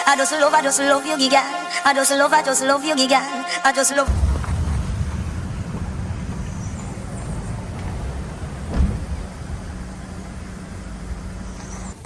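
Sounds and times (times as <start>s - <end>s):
thump: 4.1s - 9.3s
car road rumble: 4.1s - 12.0s.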